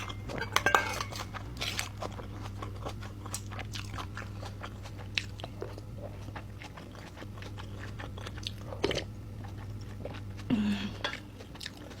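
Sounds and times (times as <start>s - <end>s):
wet chewing and biting: 1.2s - 10.5s.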